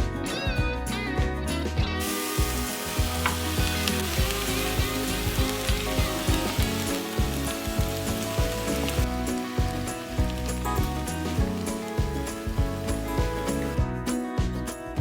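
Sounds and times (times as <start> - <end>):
music with steady beat: 0.0 - 15.0
even hiss like frying: 2.0 - 13.9.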